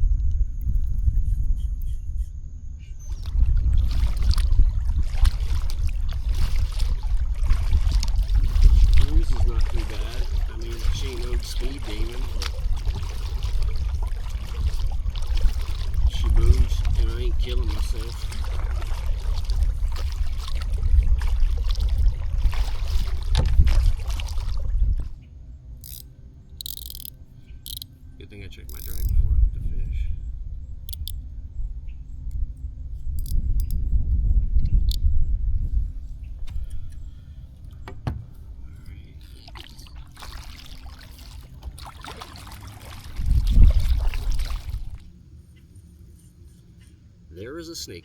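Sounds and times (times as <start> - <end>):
wind on microphone: 0.0 - 25.2, 28.8 - 38.7, 42.5 - 45.1
paddle splashing water: 3.1 - 25.2, 39.1 - 45.2
knock on kayak hull: 37.8 - 38.3.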